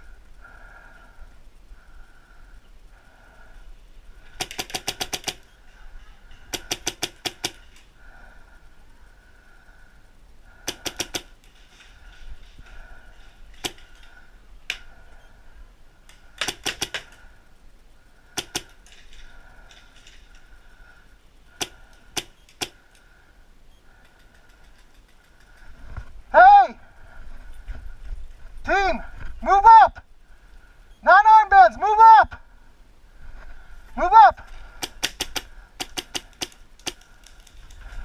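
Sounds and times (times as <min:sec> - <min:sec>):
paintball markers firing: 0:04.3 - 0:05.5, 0:06.5 - 0:07.7, 0:10.6 - 0:11.5, 0:13.6 - 0:14.8, 0:16.3 - 0:17.2, 0:18.3 - 0:19.0, 0:21.5 - 0:23.0, 0:34.7 - 0:37.8.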